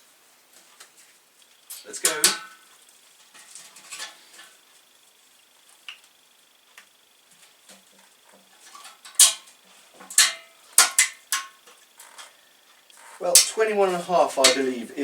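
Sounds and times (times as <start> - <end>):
hand tools tapping and clinking: 13.0 - 14.8.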